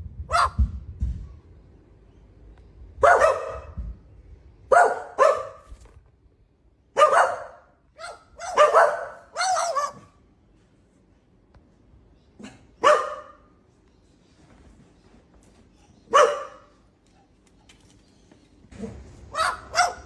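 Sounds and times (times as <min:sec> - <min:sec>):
short dog-like barks: 0:03.0 - 0:03.8, 0:04.7 - 0:05.9, 0:07.0 - 0:10.2.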